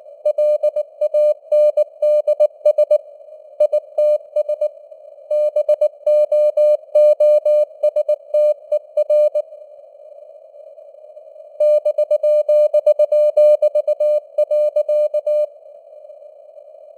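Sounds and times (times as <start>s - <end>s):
morse code beeps: 0.3s - 3.0s, 5.3s - 9.4s, 11.6s - 15.5s.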